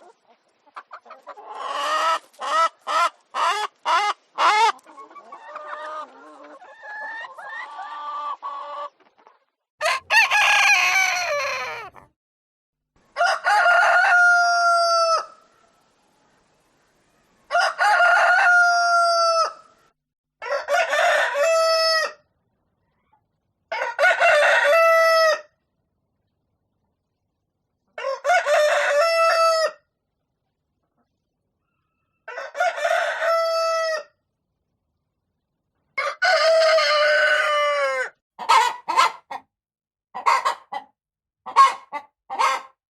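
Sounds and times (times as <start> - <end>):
chickens clucking: 0.0 - 12.1, 38.4 - 39.5, 40.2 - 42.7
rooster crowing: 9.8 - 12.0, 13.2 - 15.4, 17.5 - 19.6, 20.4 - 22.2
chicken call: 9.8 - 12.1.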